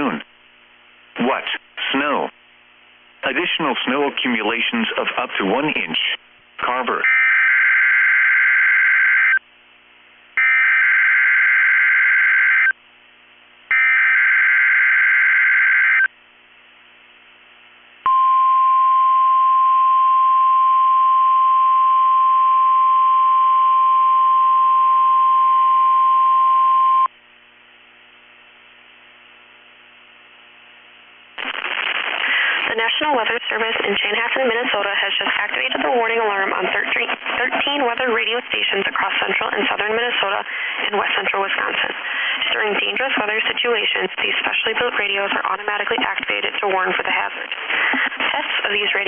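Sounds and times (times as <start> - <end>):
steady warning alarm tone: 7.0 - 9.4, 10.4 - 12.8, 13.7 - 16.1.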